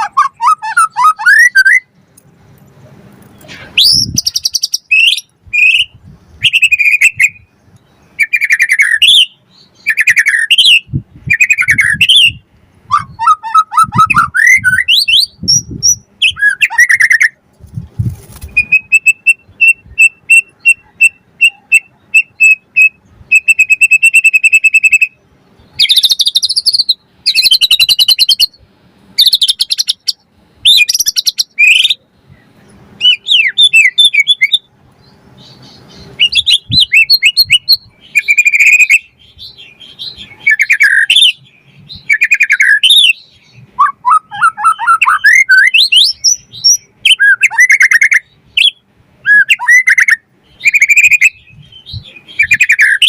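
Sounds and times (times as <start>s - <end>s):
songbird singing: 0.0s - 53.0s.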